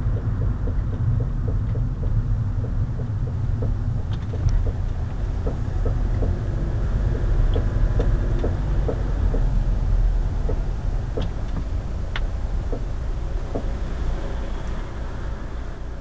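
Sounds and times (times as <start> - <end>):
road and engine rumble: 0.0 - 16.0
wheel knocking: 0.1 - 9.6.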